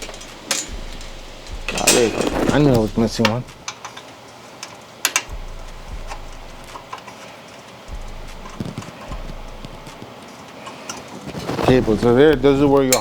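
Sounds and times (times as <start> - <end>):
metal case parts clicking: 0.0 - 5.4.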